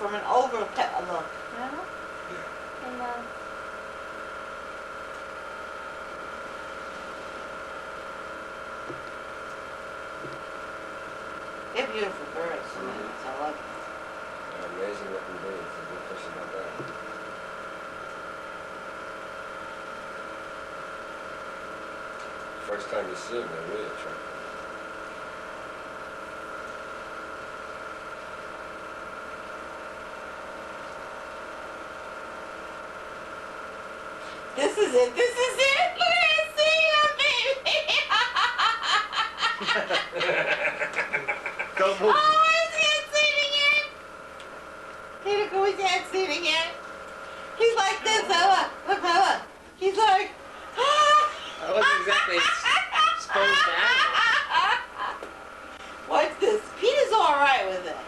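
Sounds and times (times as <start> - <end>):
steady hum and hiss: 0.0 - 58.0.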